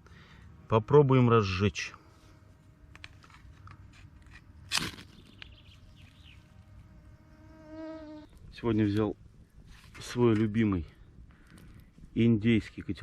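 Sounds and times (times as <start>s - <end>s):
faint insect buzz: 0.1s - 8.4s.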